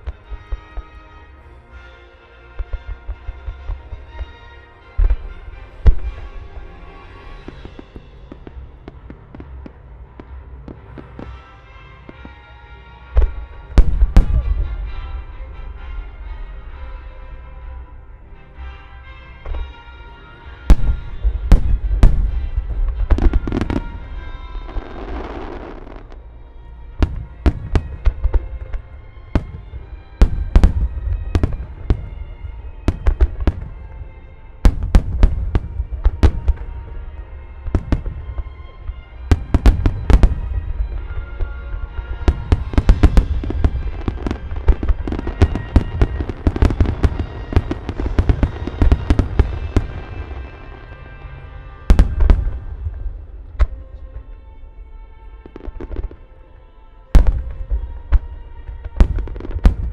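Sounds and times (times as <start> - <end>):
orchestral music over loudspeakers: 0.0 - 59.9
fireworks booming and banging: 2.6 - 12.5, 13.1 - 16.8, 20.5 - 26.2, 27.0 - 54.4, 55.4 - 56.2, 57.1 - 59.9.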